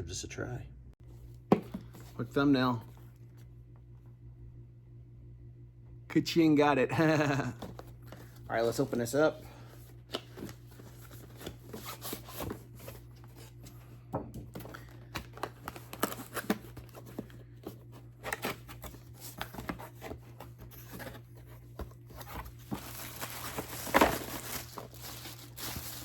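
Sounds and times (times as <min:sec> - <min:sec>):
steady low hum: 0:00.0 - 0:26.0
packaging rustling and tearing: 0:14.5 - 0:26.0.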